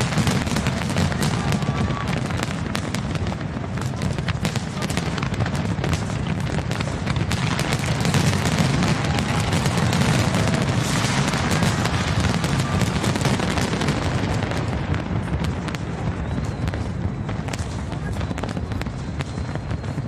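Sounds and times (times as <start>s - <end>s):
fireworks booming and crackling: 0.0s - 20.0s.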